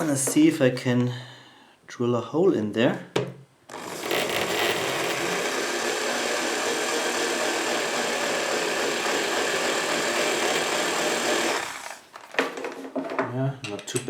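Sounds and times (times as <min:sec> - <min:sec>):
electric drill boring into metal: 0:03.7 - 0:12.1.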